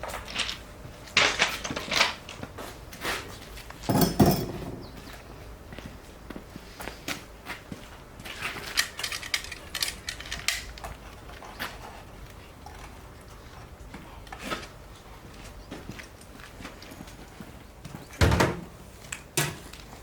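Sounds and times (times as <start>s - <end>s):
metallic clicks and knocks: 8.7s - 11.0s.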